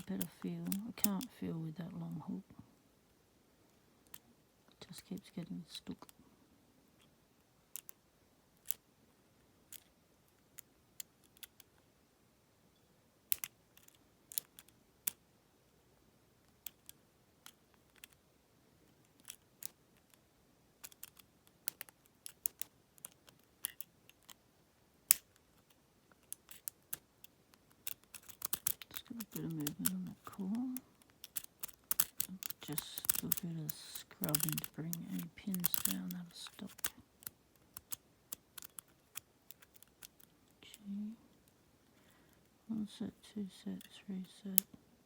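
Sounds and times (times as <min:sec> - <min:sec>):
lock pick clicking in padlock: 0:13.3 - 0:15.2, 0:25.1 - 0:25.4, 0:27.6 - 0:30.0, 0:31.0 - 0:40.3.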